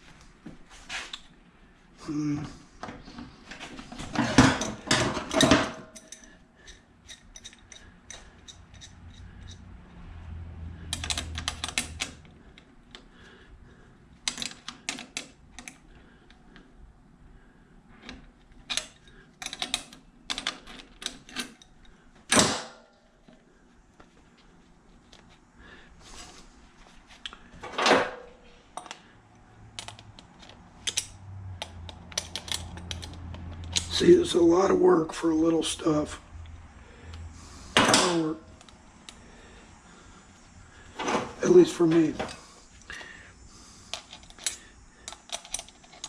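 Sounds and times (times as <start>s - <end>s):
metal parts clicking and clanking: 3.1s - 9.7s, 10.9s - 13.1s, 14.2s - 15.9s, 18.0s - 23.3s, 29.7s - 34.4s, 37.8s - 39.2s, 43.9s - 46.0s.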